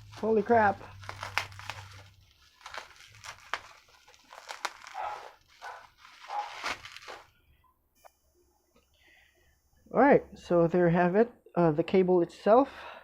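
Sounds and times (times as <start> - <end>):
plastic wrap crinkling: 0.0 - 7.4.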